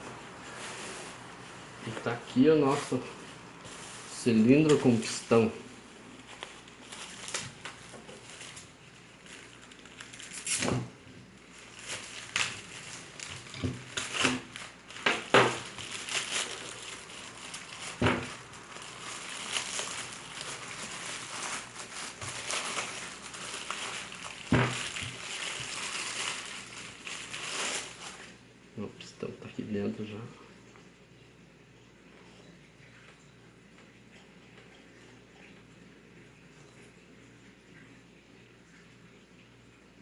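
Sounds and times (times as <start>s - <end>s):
packaging crinkling and tearing: 6.1s - 28.4s.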